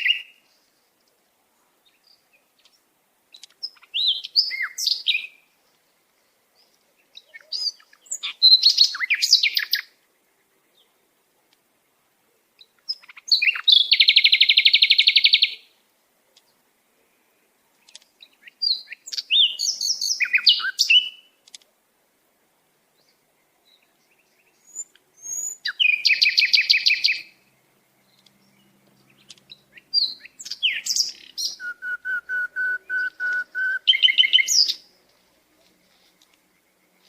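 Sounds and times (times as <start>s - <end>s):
sparrow chirping: 1.8s - 5.5s, 6.2s - 9.9s, 12.6s - 15.7s, 17.8s - 21.2s, 23.0s - 35.0s.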